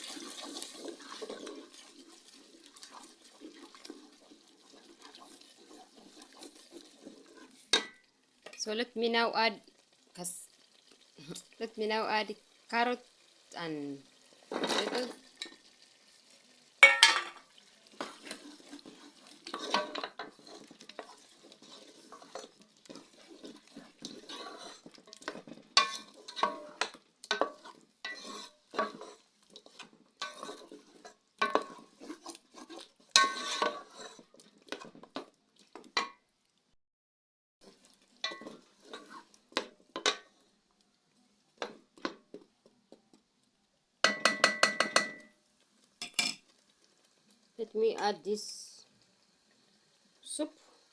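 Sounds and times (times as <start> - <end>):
spoon scraping in cooking pot: 0.0 - 8.0, 16.8 - 36.1, 37.6 - 40.4.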